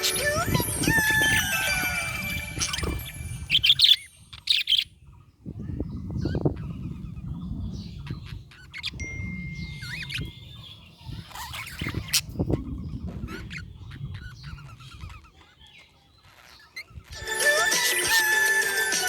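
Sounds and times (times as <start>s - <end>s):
budgerigars chirping and warbling: 0.0s - 18.7s.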